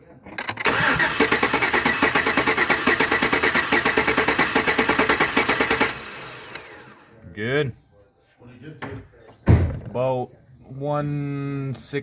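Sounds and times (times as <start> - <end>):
truck engine cranking: 0.2 - 7.0.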